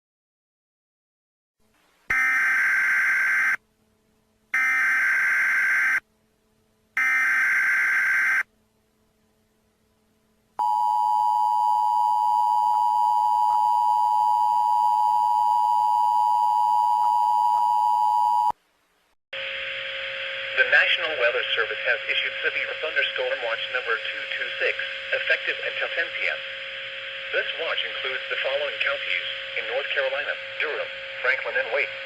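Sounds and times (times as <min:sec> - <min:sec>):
steady attention tone: 0:10.6 - 0:18.5.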